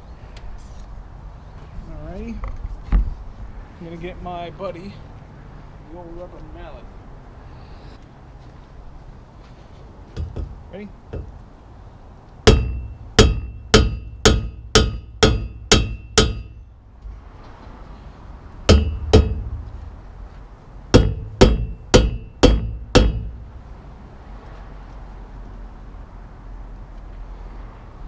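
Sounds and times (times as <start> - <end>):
rubber mallet striking metal bar: 12.5 - 16.6, 18.7 - 19.6, 20.9 - 23.4.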